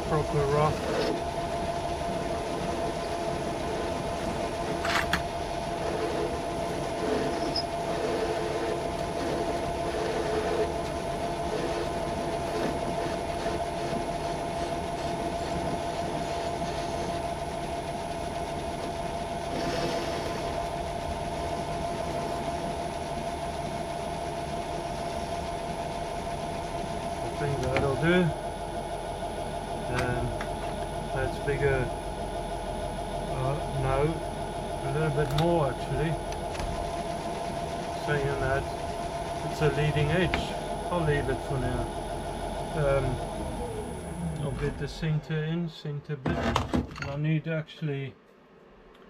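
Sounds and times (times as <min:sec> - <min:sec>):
lathe humming: 0:00.0 - 0:45.6
cutting tool scraping metal: 0:05.8 - 0:10.8.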